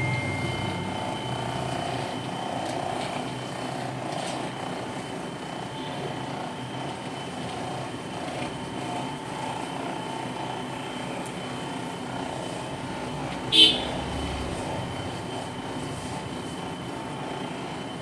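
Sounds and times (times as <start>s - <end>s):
high whine: 0.0s - 2.3s
mechanical hum: 0.0s - 18.0s.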